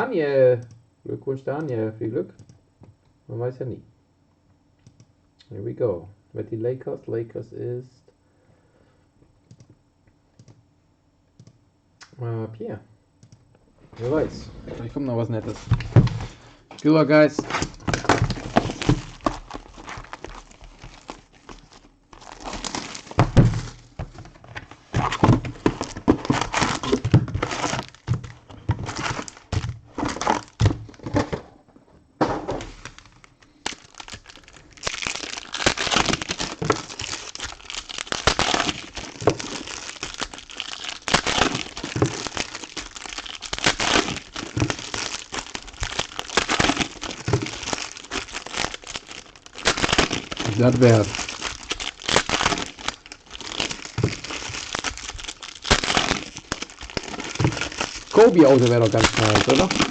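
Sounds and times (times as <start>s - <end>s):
wrappers crinkling and tearing: 14.9s - 31.4s, 32.6s - 59.9s.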